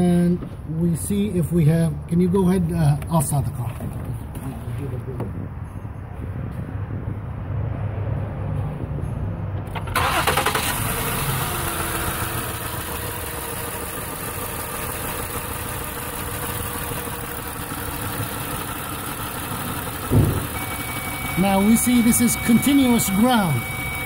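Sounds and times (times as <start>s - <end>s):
car engine starting and idling: 9.6s - 24.0s.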